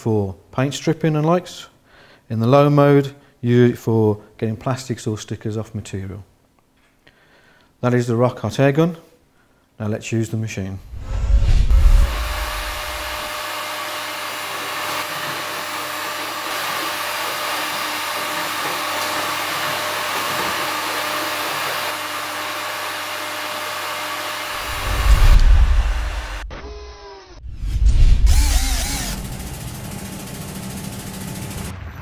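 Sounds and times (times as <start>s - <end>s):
deep rumble: 10.8s - 13.2s, 24.6s - 26.8s, 27.4s - 29.7s
heat gun fan whooshing: 10.8s - 13.5s, 24.4s - 26.8s, 27.4s - 31.7s.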